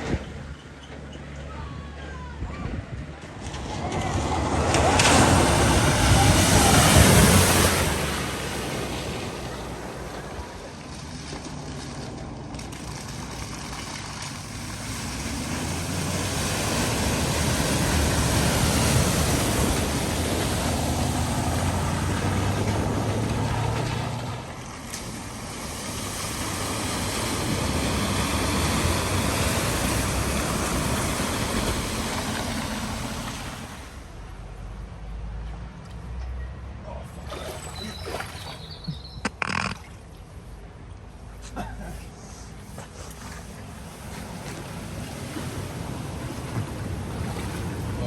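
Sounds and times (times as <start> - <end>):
vehicle engine: 0.0 - 48.0
water rushing aside: 3.4 - 34.4, 37.1 - 40.5, 42.5 - 48.0.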